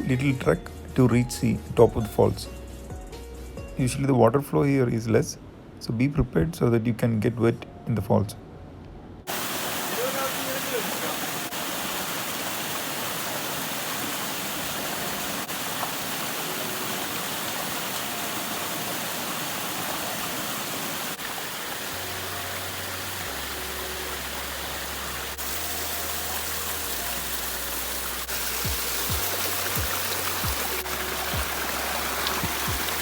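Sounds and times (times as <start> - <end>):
waterfall rushing: 9.3 - 33.0.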